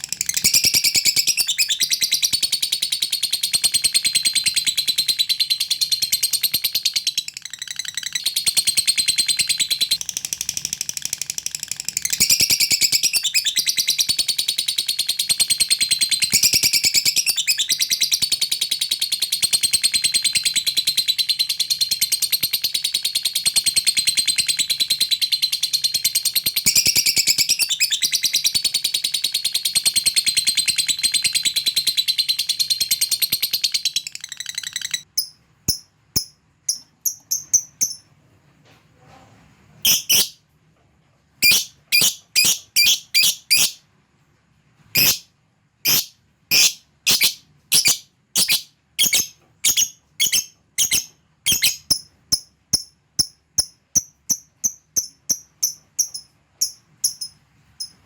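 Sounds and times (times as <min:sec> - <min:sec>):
bird chattering trill: 0:00.0 - 0:10.3, 0:30.4 - 0:38.0, 0:39.9 - 0:40.4, 0:41.4 - 0:43.8, 0:45.0 - 0:45.2, 0:45.8 - 0:58.0.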